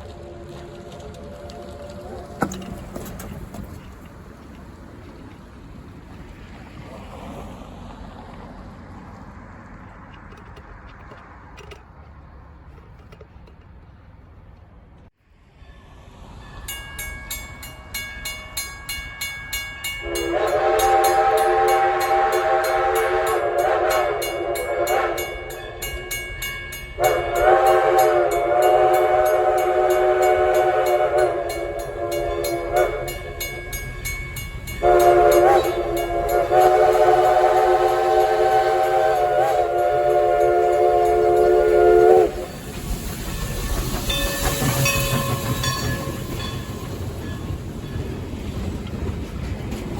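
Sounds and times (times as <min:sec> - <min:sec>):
train air horn blasts: 0:20.0 - 0:33.8, 0:34.7 - 0:42.6.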